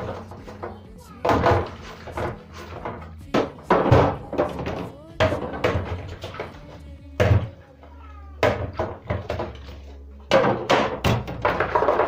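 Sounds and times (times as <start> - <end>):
plastic compartments knocking: 0.0 - 12.0.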